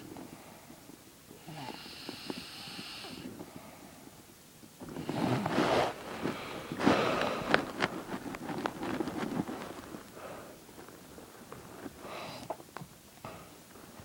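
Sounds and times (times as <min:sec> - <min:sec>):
woman snoring: 0:01.4 - 0:03.3, 0:05.0 - 0:06.0.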